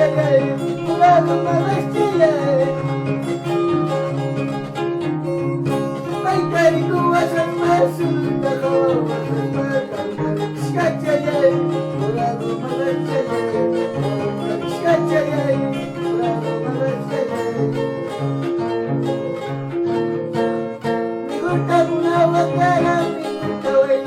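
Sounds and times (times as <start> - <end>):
harp plucked notes: 0.0 - 24.0.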